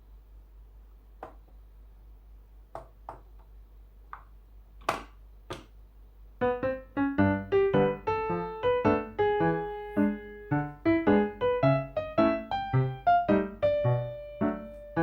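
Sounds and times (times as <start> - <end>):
faint room hum: 0.0 - 15.0
light piano tune: 6.4 - 15.0.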